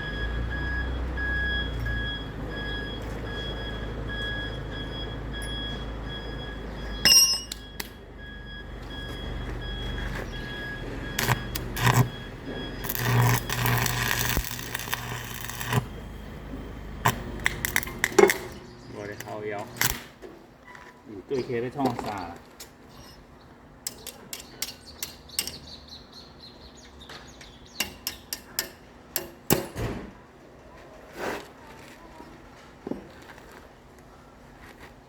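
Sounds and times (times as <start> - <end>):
low machine hum: 1.9 - 21.3.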